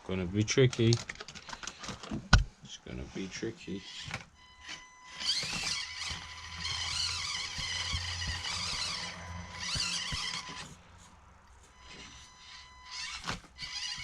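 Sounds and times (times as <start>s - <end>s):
small electric motor whining: 3.8s - 10.8s, 11.7s - 14.0s.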